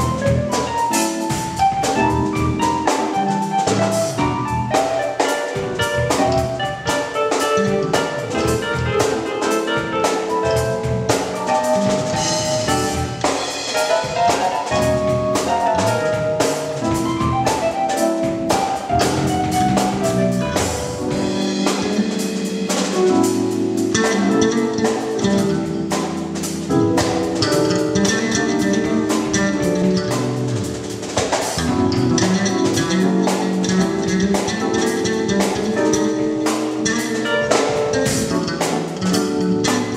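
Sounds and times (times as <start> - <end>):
bass: 0.0 - 39.9
drum kit gospel groove: 0.0 - 39.9
sustained keyboard chords: 0.0 - 39.9.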